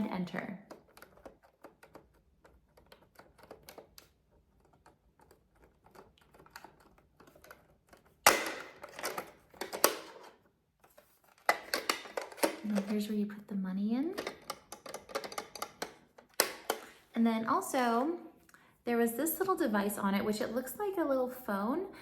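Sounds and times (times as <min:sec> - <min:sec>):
plastic clatter: 0:05.5 - 0:13.2
plastic toy buttons clicking: 0:14.2 - 0:16.9.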